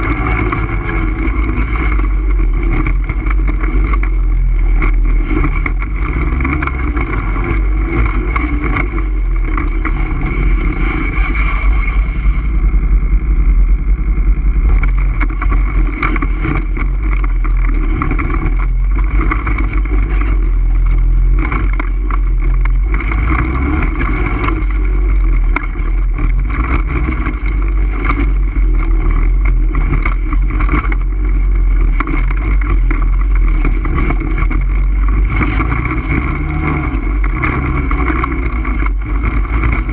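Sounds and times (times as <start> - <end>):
all-terrain vehicle engine running: 0.0 - 39.9.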